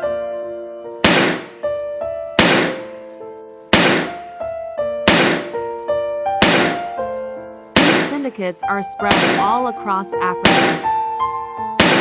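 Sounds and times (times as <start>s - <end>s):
heavy percussive hit: 1.0s - 1.6s, 2.4s - 2.8s, 3.8s - 4.2s, 5.1s - 5.6s.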